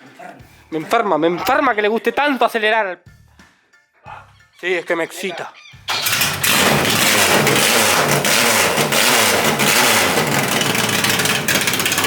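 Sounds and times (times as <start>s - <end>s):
car engine revving: 5.9s - 12.0s.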